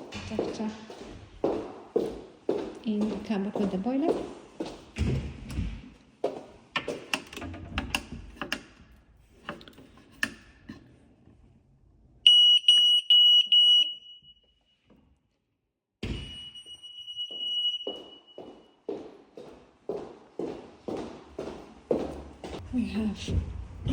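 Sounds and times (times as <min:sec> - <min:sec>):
high-pitched alarm beeps: 0:12.3 - 0:14.5, 0:16.0 - 0:18.8.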